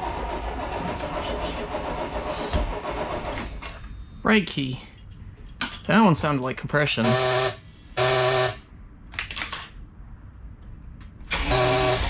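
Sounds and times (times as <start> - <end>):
engine starter cranking: 0.0 - 3.5, 11.3 - 12.0.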